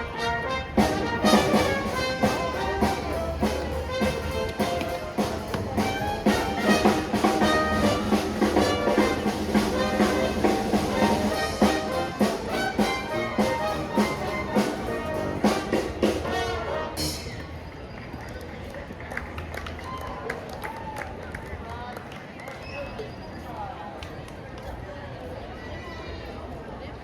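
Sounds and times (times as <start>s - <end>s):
brass band playing jazz: 0.0s - 17.4s.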